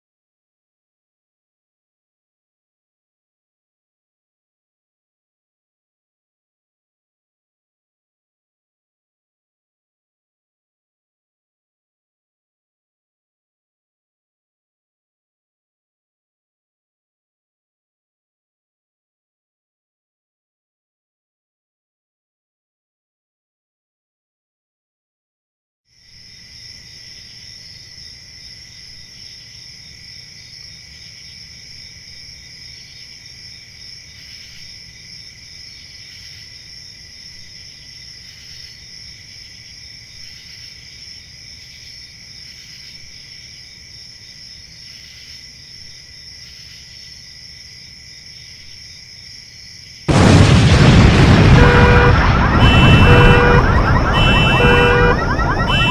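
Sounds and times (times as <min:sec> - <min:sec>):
insect chorus: 0:25.9 - 0:51.3
low rumble: 0:50.1 - 0:55.9
sudden loud burst of noise: 0:50.1 - 0:55.9.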